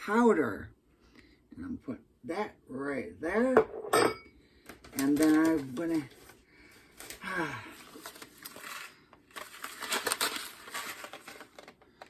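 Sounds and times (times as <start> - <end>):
plastic pouch crinkling: 4.8 - 12.0.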